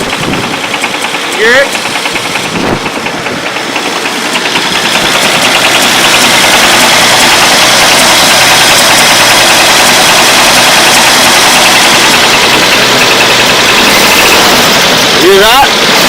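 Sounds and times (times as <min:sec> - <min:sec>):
car engine with rod knock: 0:00.0 - 0:07.4.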